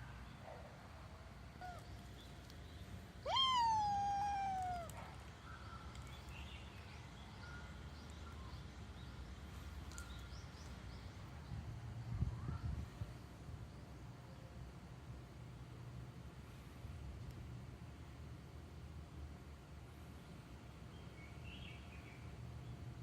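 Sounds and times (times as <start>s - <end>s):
faint bird chirps: 1.6s - 11.2s
cat meowing: 3.2s - 5.0s.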